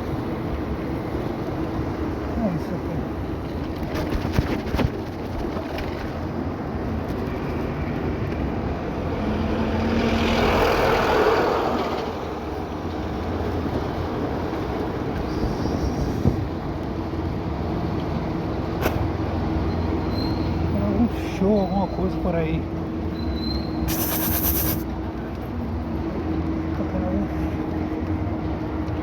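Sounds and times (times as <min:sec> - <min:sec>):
vehicle passing: 0:08.8 - 0:12.1.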